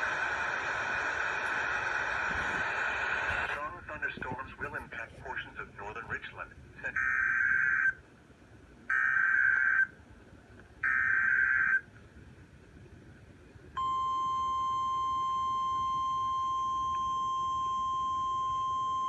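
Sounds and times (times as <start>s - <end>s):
steady warning alarm tone: 13.8s - 19.0s.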